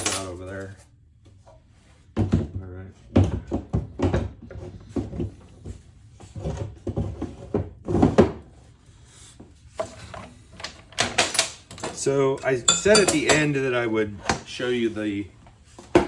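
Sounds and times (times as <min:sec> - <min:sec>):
small tools knocking and clattering: 0:00.0 - 0:00.5, 0:09.8 - 0:13.6.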